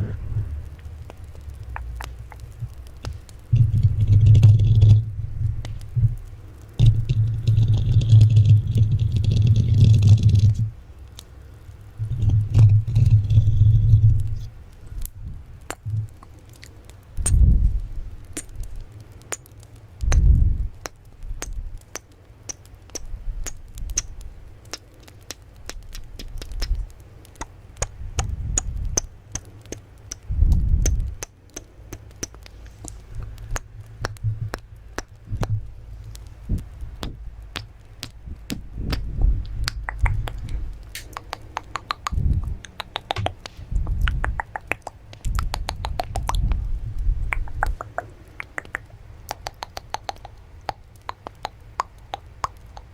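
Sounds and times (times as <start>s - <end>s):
soft low thumps: 0.0s - 10.7s, 30.3s - 31.2s, 32.9s - 48.8s
sharp clicks and taps: 0.6s - 5.0s, 18.3s - 52.9s.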